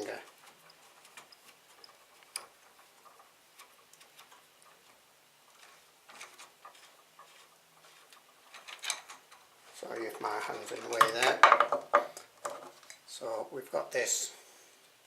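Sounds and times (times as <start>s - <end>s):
small metal parts clicking: 0.2s - 9.5s.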